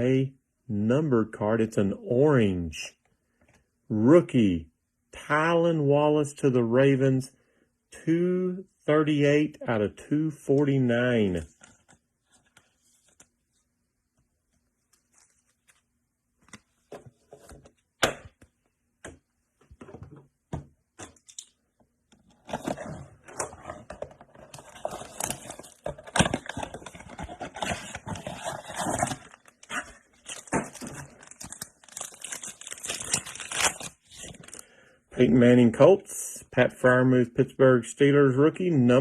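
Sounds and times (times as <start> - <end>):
card pack wrapper crinkling: 14.8 - 16.8, 22.4 - 34.7.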